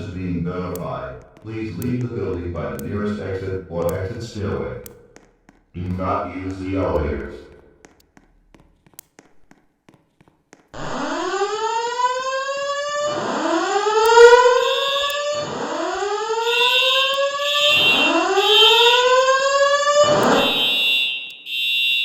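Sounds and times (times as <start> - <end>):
rising whoop alarm tone: 10.8 - 21.3.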